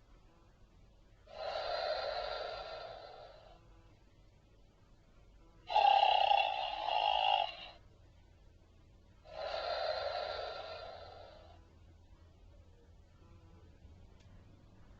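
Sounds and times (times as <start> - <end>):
toy voice box snore: 1.3 - 3.6, 5.7 - 7.8, 9.3 - 11.6.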